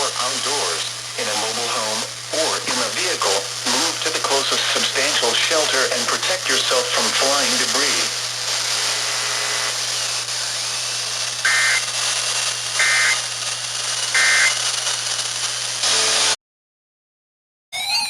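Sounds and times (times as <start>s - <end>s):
radio static hiss: 0.0s - 16.4s
two-tone data warble bursts: 17.8s - 18.0s.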